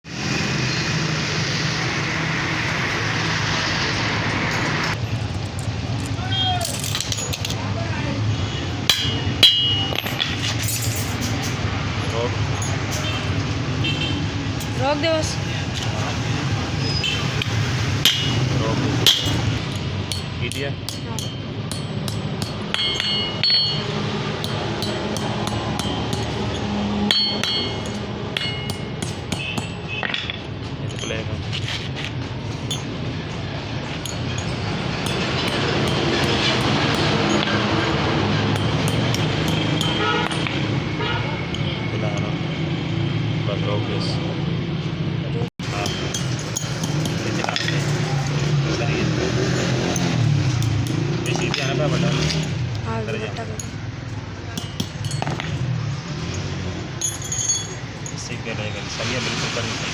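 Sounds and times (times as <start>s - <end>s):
hammer striking metal: 8.5s - 15.0s, 16.9s - 31.4s, 32.5s - 42.3s, 45.6s - 58.4s.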